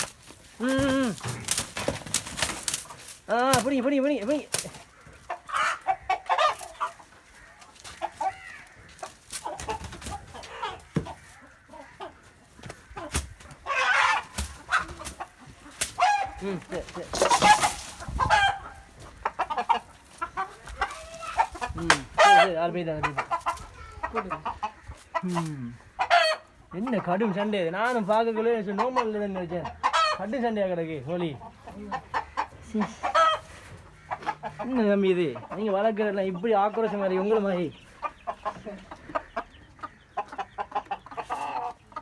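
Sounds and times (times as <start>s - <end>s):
scuffling and wing flapping: 0.0s - 23.9s
roosters squawking and clucking: 0.0s - 42.0s.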